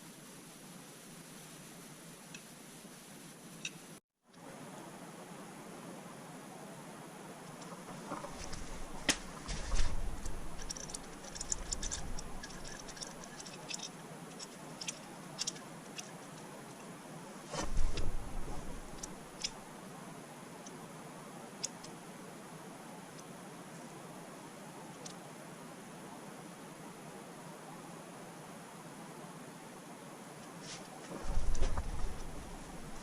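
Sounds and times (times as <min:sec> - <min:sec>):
light clicks of tools: 0:07.4 - 0:16.9
rustling: 0:07.5 - 0:19.7, 0:30.5 - 0:33.0.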